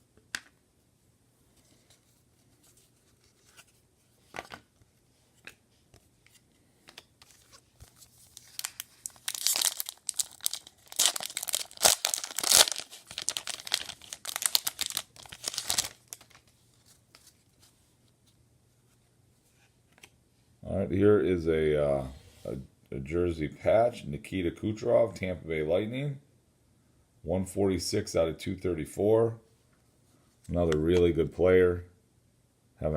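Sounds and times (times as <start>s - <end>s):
wrapper tearing and crinkling: 7.4s - 17.3s.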